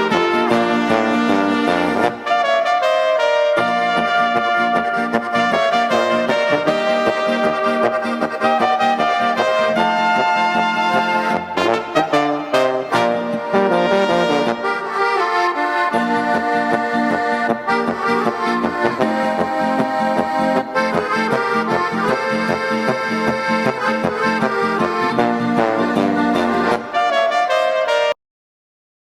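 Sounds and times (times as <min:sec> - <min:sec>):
accordion and brass music: 0:00.0 - 0:28.2.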